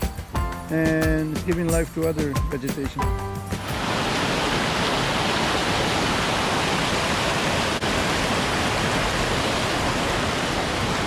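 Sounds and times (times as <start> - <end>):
water pouring over waterfall: 3.6 - 11.0.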